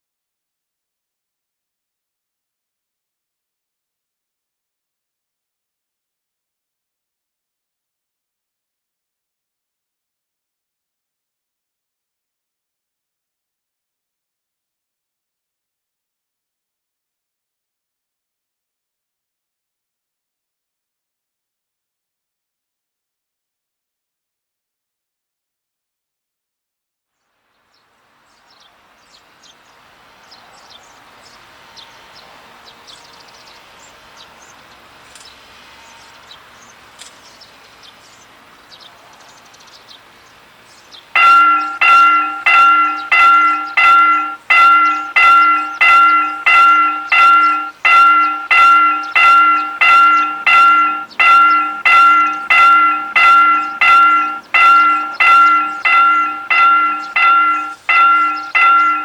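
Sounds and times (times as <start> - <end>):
level crossing warning bell dings: 41.2 - 59.0
small high chirps: 41.2 - 59.0.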